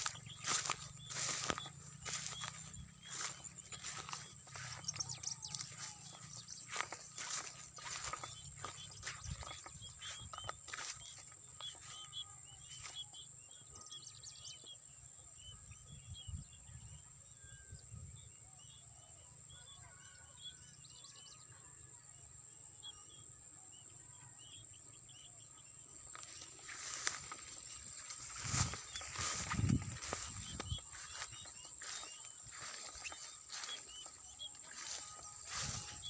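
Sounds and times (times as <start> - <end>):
small birds chirping: 0.0 - 17.6, 22.8 - 36.0.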